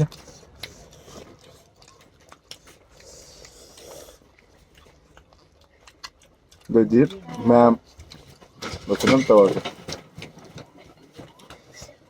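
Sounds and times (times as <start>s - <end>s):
person chewing food: 0.0s - 8.6s.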